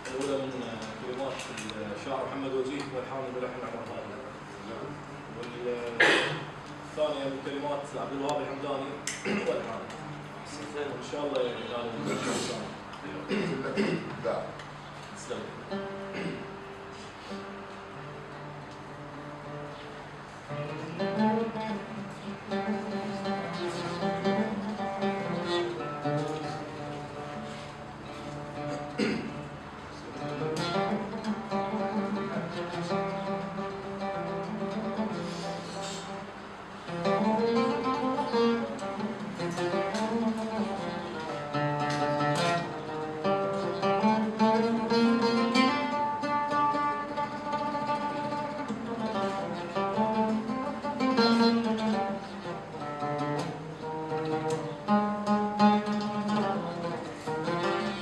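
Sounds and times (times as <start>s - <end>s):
plucked string instrument melody: 15.6s - 58.0s.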